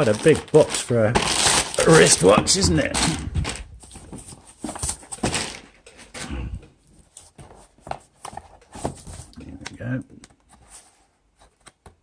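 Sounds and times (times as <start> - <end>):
cardboard packaging handled: 0.0 - 5.8, 7.0 - 9.6.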